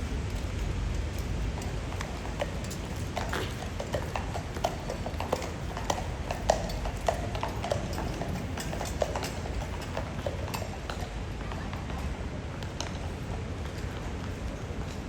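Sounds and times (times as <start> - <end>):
horse hooves on paved road: 0.0 - 15.0.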